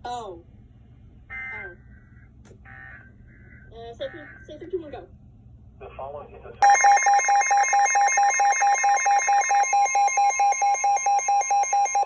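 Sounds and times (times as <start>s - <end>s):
radio alert alarm beeping: 6.6s - 12.0s
steady warning alarm tone: 6.6s - 12.0s.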